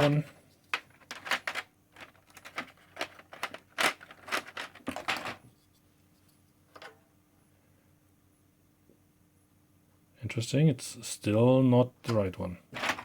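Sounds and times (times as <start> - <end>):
plastic keycaps clicking and rustling: 0.8 - 5.4.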